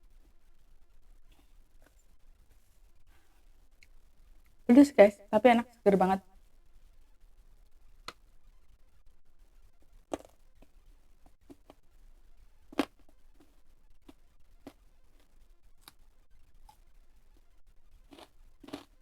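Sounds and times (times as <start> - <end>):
chewing crunches: 10.1 - 10.7, 12.7 - 16.0, 18.0 - 19.0.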